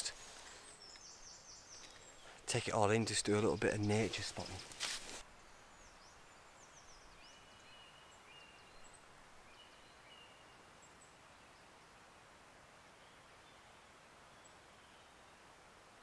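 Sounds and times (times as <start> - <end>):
faint birdsong whistles: 5.4 - 11.6.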